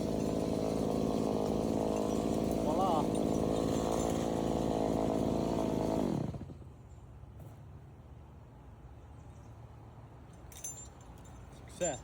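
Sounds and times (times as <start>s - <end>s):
chainsaw revving and idling: 0.0s - 6.7s.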